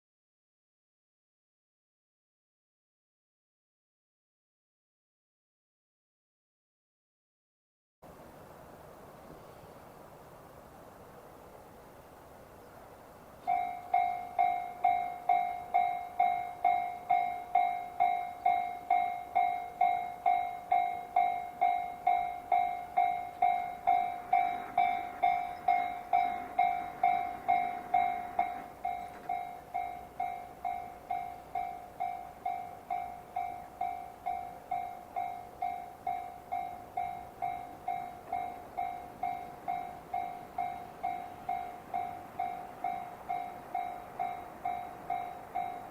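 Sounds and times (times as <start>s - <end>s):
level crossing warning bell: 12.9s - 45.9s.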